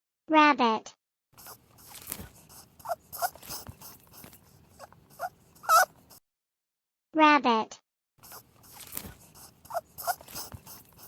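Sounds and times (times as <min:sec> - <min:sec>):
rabbit clicking and rustling: 0:01.4 - 0:06.0, 0:08.3 - 0:11.0
rabbit squeaks: 0:01.4 - 0:06.2, 0:08.2 - 0:11.0.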